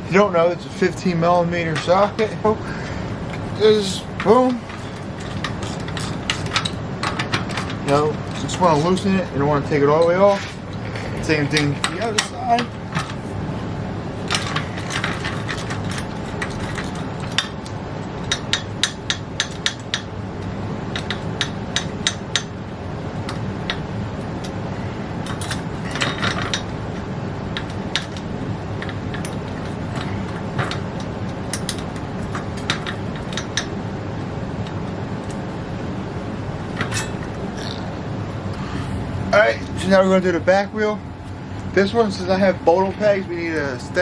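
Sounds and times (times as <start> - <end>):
metal tools clinking: 3.3 - 13.4, 25.3 - 26.7, 36.7 - 37.8.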